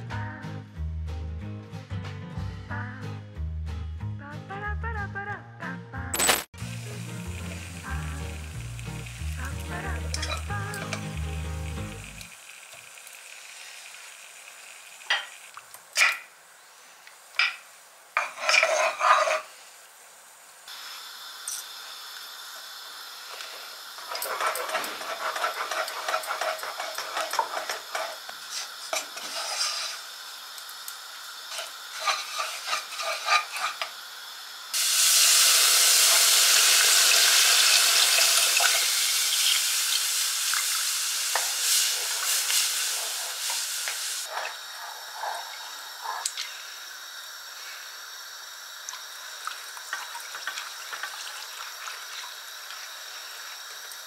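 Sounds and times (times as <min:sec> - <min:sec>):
loud steady hiss: 0:06.2 - 0:18.2, 0:19.4 - 0:25.1, 0:27.4 - 0:54.0
food sizzling: 0:06.2 - 0:54.0
dishes and utensils clinking: 0:10.1 - 0:11.1
stirring food: 0:24.0 - 0:29.8.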